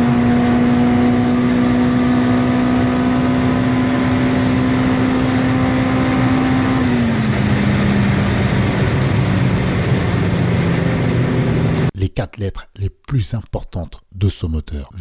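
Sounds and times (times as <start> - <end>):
car engine at high revs: 0.0 - 11.9.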